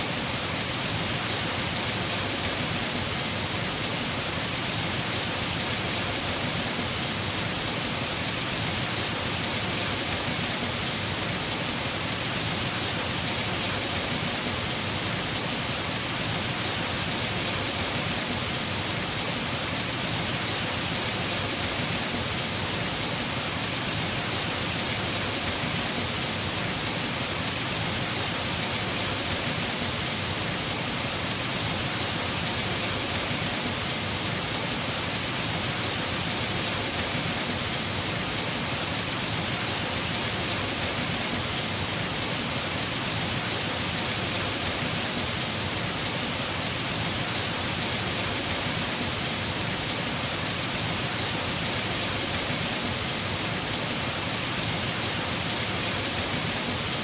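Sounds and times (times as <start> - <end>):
heavy rain on a roof: 0.0 - 57.0.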